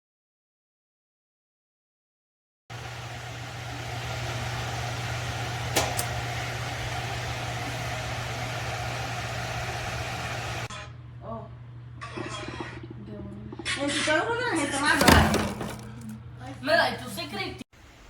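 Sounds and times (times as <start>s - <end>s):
electric fan humming: 2.7s - 12.0s, 14.1s - 18.0s.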